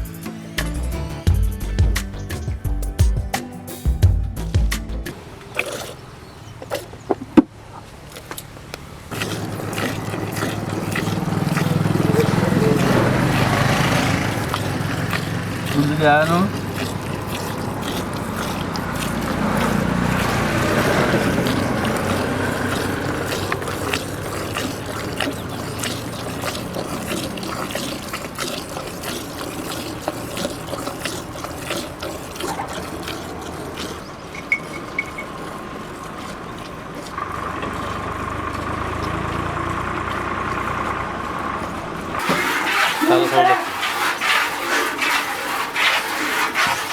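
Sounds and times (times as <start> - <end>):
milk squirting into a pail: 5.1 - 46.9.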